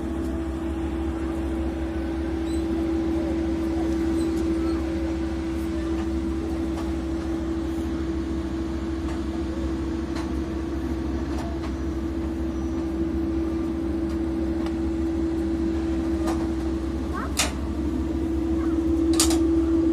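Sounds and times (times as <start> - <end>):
steady machinery hum: 0.0 - 19.9.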